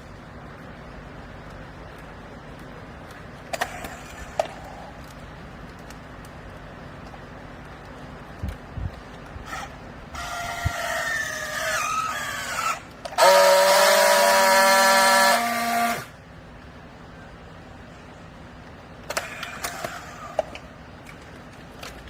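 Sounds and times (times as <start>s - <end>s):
hydraulic baler whining: 9.4s - 16.2s.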